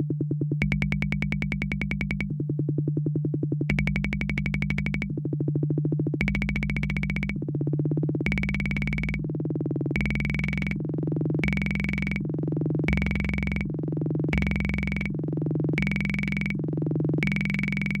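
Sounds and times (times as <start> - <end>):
steady low tone: 0.0 - 2.6, 3.2 - 18.0
drum machine electronic pattern: 0.6 - 2.3, 3.7 - 5.1, 6.2 - 7.4, 8.3 - 9.2, 10.0 - 10.8, 11.4 - 12.2, 12.9 - 13.8, 14.4 - 15.2, 15.8 - 16.6, 17.2 - 18.0
fast buzzing ticks: 0.6 - 2.3, 3.7 - 5.1, 6.2 - 7.4, 8.3 - 9.2, 10.0 - 10.8, 11.4 - 12.3, 12.9 - 13.8, 14.4 - 15.2, 15.8 - 18.0.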